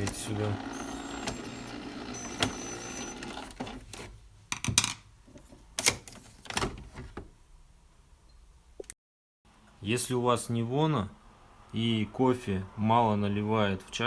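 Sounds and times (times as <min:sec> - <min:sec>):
coffee machine motor whirring: 0:00.0 - 0:03.8.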